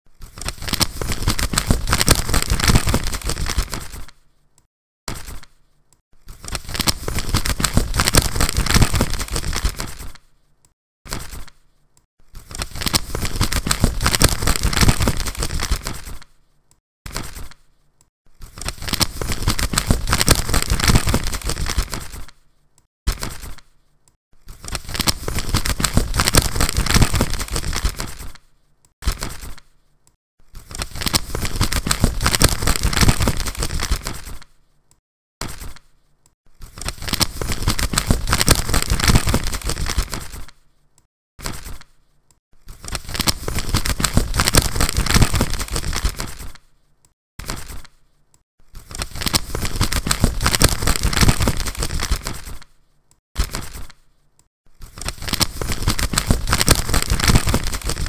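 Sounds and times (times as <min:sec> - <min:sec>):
paper ticket crinkling: 0:00.2 - 0:04.1, 0:06.3 - 0:10.2, 0:12.3 - 0:16.2, 0:18.4 - 0:22.3, 0:24.5 - 0:28.4, 0:30.6 - 0:34.4, 0:36.6 - 0:40.5, 0:42.7 - 0:46.6, 0:48.8 - 0:52.6, 0:54.9 - 0:58.0.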